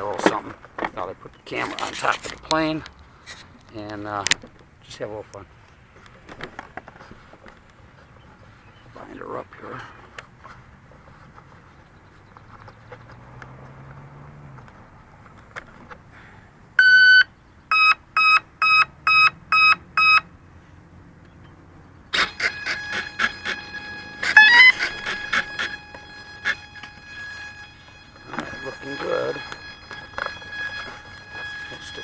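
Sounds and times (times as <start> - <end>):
speed controller beeps: 16.8 - 20.3, 22.2 - 32.0.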